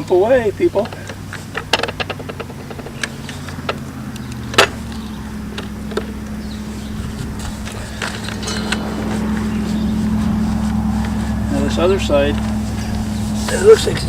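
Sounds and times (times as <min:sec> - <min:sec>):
steady low hum: 0:00.0 - 0:14.0
floor jack clicking and knocking: 0:00.8 - 0:06.3
wood cracking: 0:00.8 - 0:09.4.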